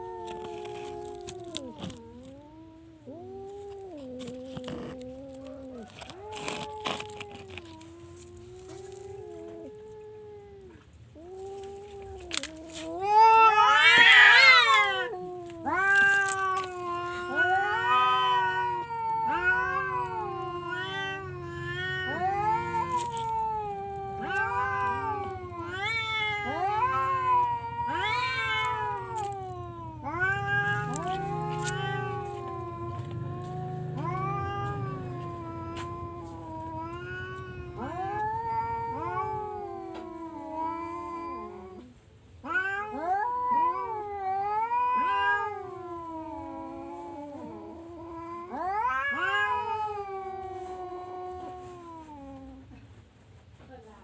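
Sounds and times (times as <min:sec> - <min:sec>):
cat yowling: 0:00.0 - 0:52.7.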